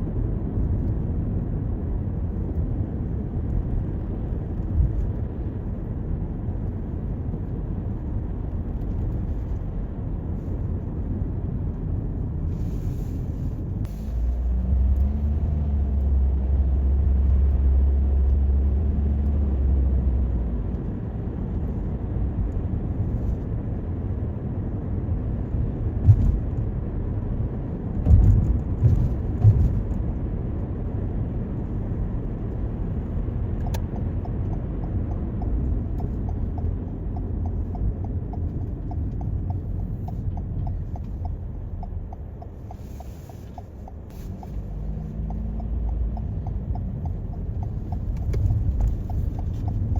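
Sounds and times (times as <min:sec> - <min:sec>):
road and engine rumble in car: 0:00.0 - 0:49.9
turn signal ticking: 0:27.7 - 0:49.9.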